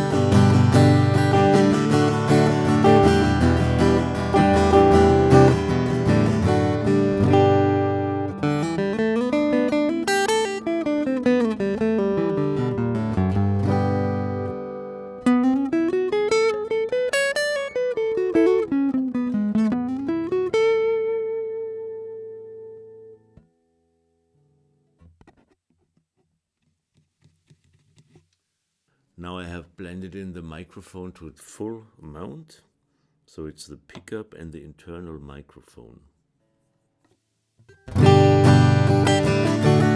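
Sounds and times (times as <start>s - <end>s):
acoustic guitar playing: 0.0s - 25.5s, 37.7s - 39.9s.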